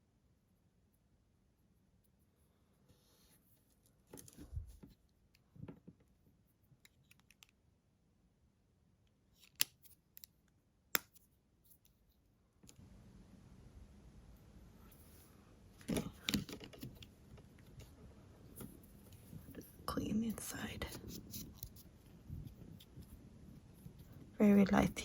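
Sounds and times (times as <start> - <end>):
soft steady hiss: 0.0 - 25.0
faint scraping and rubbing: 14.8 - 25.0.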